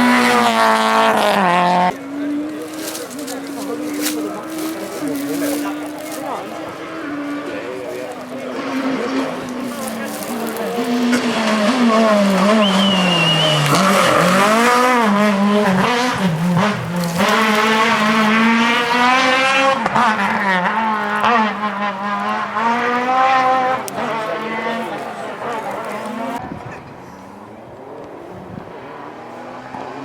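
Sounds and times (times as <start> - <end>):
rally car engine revving: 0.0 - 30.0
tyres squealing: 1.4 - 7.2, 7.8 - 21.7.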